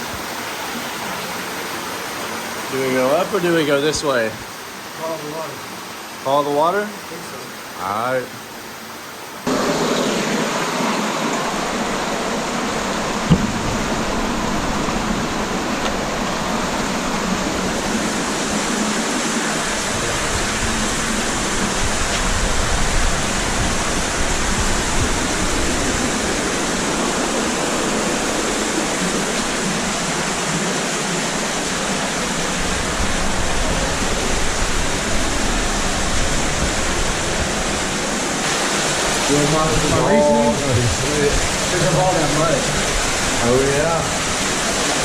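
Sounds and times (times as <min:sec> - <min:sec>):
water rushing in cave stream: 0:00.0 - 0:45.0.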